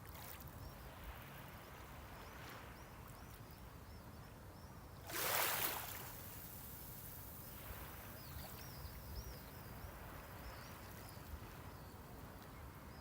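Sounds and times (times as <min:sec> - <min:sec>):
low sea noise: 0:00.0 - 0:13.0
small waves washing ashore: 0:05.0 - 0:12.9.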